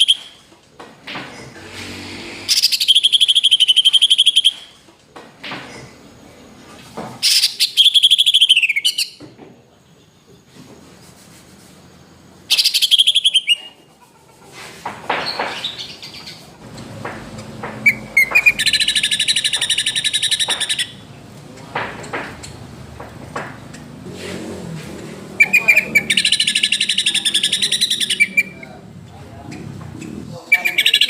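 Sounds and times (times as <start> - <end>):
bird singing fast trills: 2.5 - 4.7, 7.2 - 9.2, 12.5 - 13.8, 17.8 - 21.1, 25.3 - 28.7, 30.4 - 31.0.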